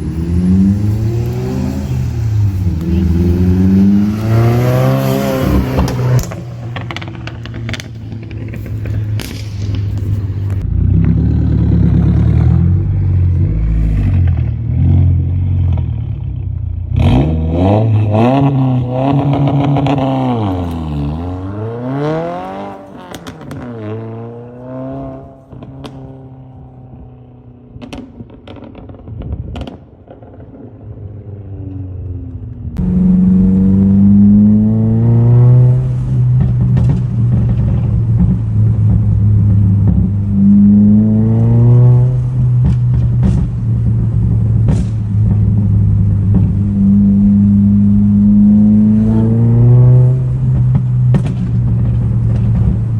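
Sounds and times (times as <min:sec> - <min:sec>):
exhaust pops and crackles: 0:00.0 - 0:14.8, 0:22.7 - 0:23.8, 0:25.4 - 0:27.1, 0:27.7 - 0:31.2, 0:32.0 - 0:52.9
car engine revving: 0:00.0 - 0:26.2, 0:32.8 - 0:52.9.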